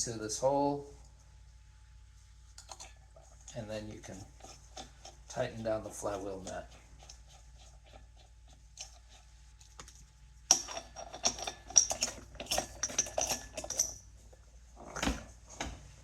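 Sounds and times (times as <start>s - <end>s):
wrench clicking and rattling: 10.5s - 14.0s.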